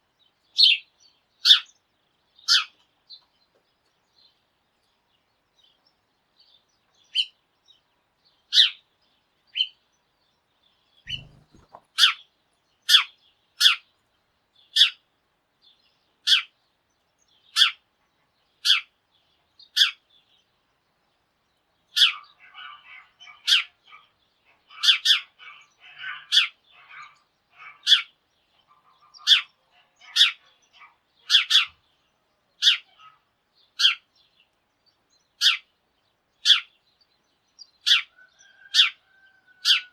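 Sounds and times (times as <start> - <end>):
soft twittering chatter: 0.0 - 39.9
sparrow single chirps: 11.1 - 12.2.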